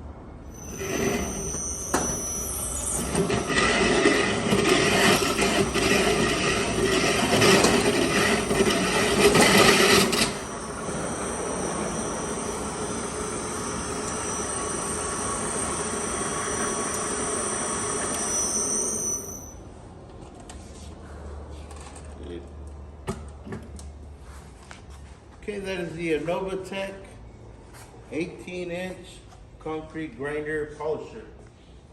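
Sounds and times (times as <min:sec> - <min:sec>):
floor grinder scraping concrete: 0:00.6 - 0:19.4.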